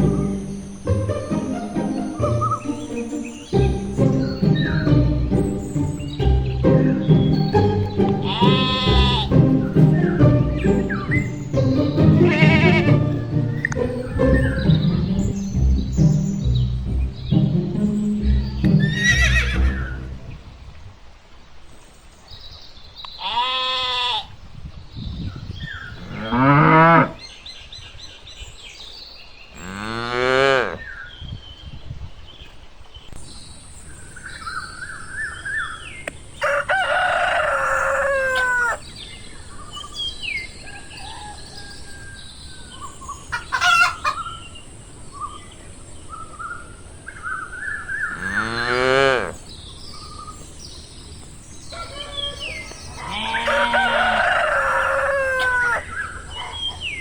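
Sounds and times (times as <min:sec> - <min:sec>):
small birds chirping: 0:00.0 - 0:57.0
deep livestock calls: 0:08.1 - 0:09.6
rooster crowing: 0:36.4 - 0:38.8, 0:40.6 - 0:42.2, 0:51.7 - 0:56.6.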